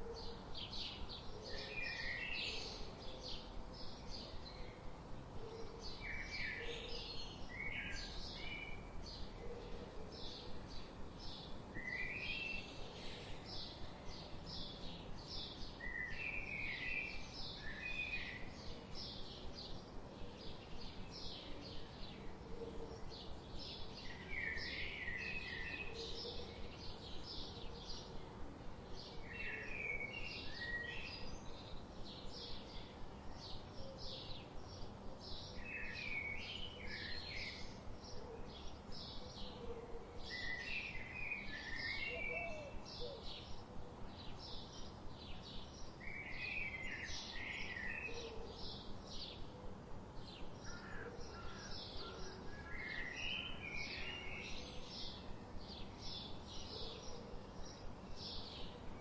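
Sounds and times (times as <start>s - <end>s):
faint background hiss: 0.0s - 59.0s
warbled birdsong: 0.0s - 59.0s.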